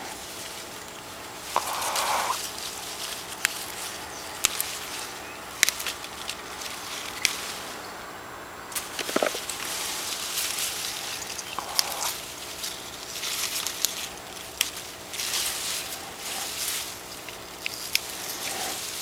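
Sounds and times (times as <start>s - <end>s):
plant leaves rustling: 0.0s - 19.0s
sharp snaps and clicks: 4.4s - 7.4s, 8.7s - 9.7s, 17.2s - 18.7s.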